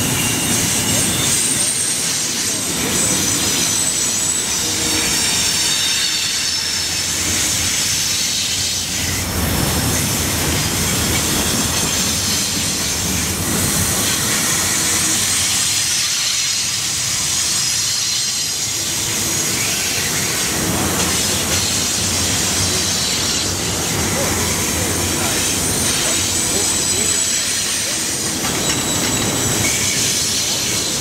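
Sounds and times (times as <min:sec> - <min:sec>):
high wheel squeal: 0:00.0 - 0:09.3, 0:13.7 - 0:31.0
train wheels rolling on rails: 0:00.0 - 0:31.0
clicking over rail joints: 0:25.2 - 0:31.0.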